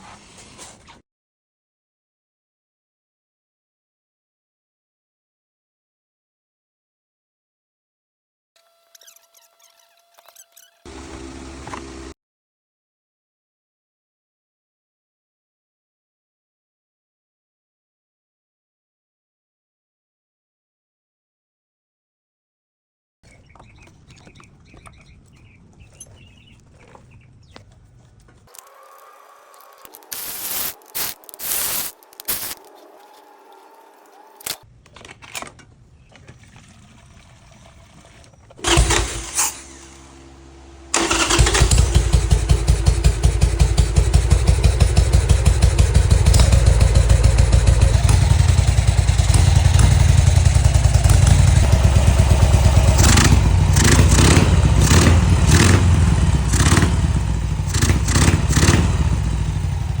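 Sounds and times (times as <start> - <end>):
motorcycle engine cranking and idling: 26.9 - 60.0.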